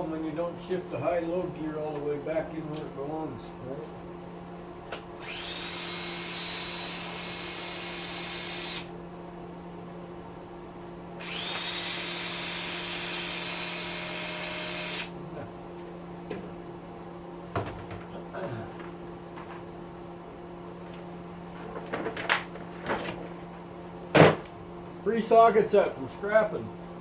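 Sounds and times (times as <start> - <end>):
power drill whining: 5.2 - 8.9, 11.2 - 15.1.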